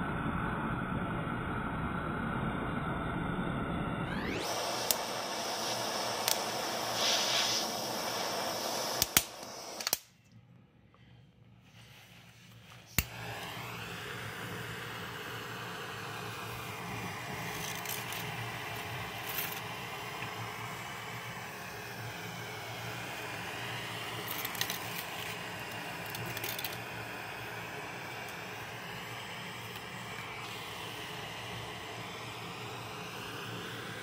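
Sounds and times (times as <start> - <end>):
gas burner flame hissing: 0.0 - 10.1, 11.6 - 34.0
sharp click: 9.0 - 10.1.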